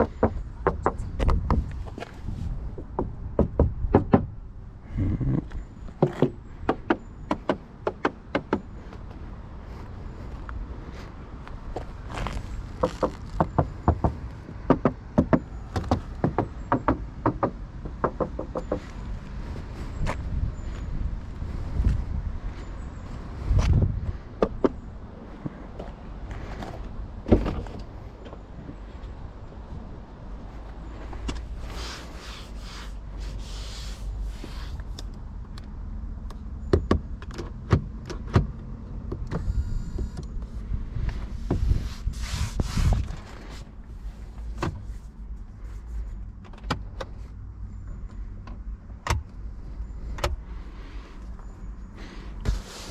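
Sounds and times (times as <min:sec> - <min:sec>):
knocking on car panels: 0:00.0 - 0:01.7, 0:02.8 - 0:04.3, 0:06.0 - 0:08.7, 0:12.8 - 0:18.8
steady low rumble: 0:00.0 - 0:33.4.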